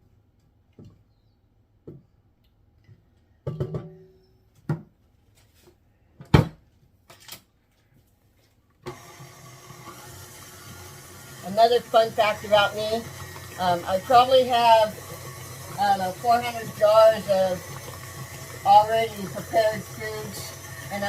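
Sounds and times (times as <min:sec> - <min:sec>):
stand mixer running: 0:08.9 - 0:21.0.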